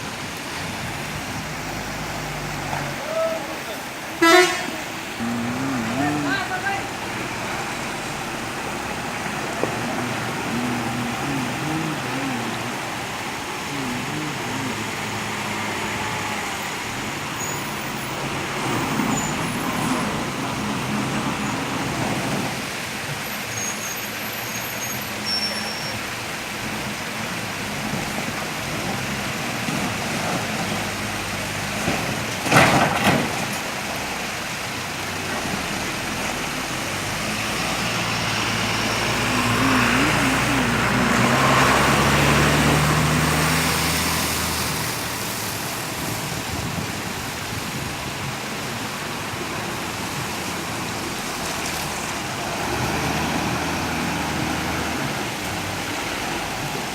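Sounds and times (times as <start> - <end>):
heavy vehicle passing: 0.0 - 23.0, 35.2 - 56.9
traffic road noise: 0.0 - 56.9.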